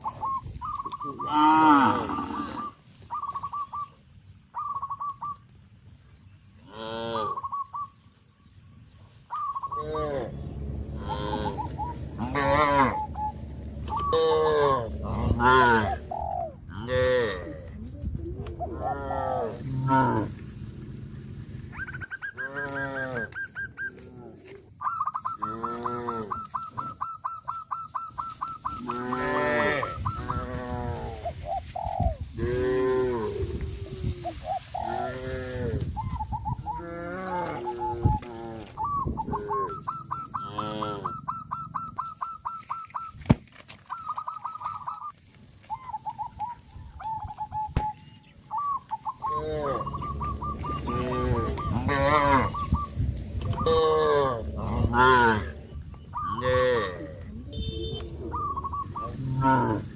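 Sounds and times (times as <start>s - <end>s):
cattle mooing: 1.2s - 2.8s, 9.8s - 17.7s, 18.6s - 21.7s, 22.4s - 23.4s, 25.4s - 26.5s, 28.8s - 31.2s, 32.4s - 33.6s, 36.7s - 41.2s, 49.2s - 59.9s
high pulsing tone: 9.8s - 16.2s, 49.2s - 54.6s.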